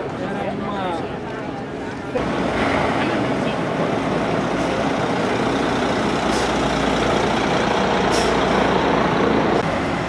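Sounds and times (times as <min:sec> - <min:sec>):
heavy vehicle engine humming: 0:01.0 - 0:10.0
short air hisses: 0:08.1 - 0:08.7.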